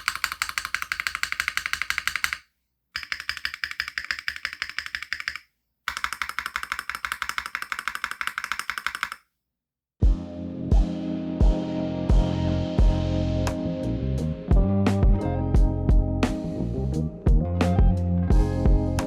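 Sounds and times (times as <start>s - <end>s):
mechanical keyboard typing: 0.0s - 9.3s
music: 10.0s - 19.0s.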